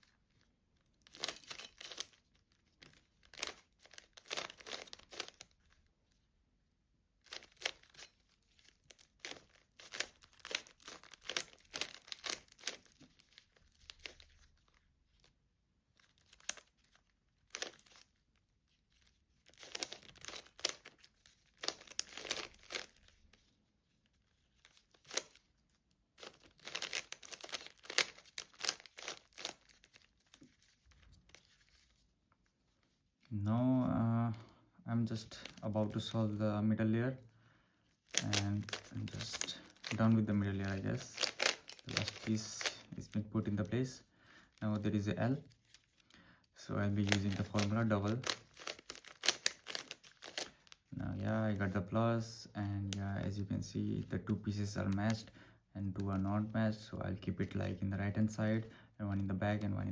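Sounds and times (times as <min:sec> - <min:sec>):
plastic puzzle cube clicking: 0:03.0 - 0:05.4, 0:09.1 - 0:14.7, 0:16.0 - 0:18.0, 0:19.6 - 0:23.2, 0:24.9 - 0:25.5, 0:26.2 - 0:30.3, 0:38.1 - 0:42.8, 0:47.0 - 0:50.6.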